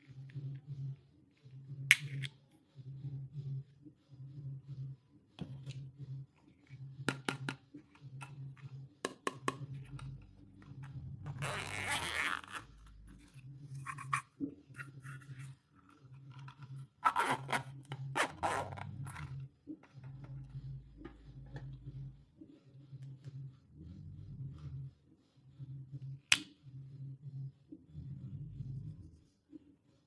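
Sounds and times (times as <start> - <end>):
packaging clicks and taps: 7.1 - 8.4, 9.1 - 10.2.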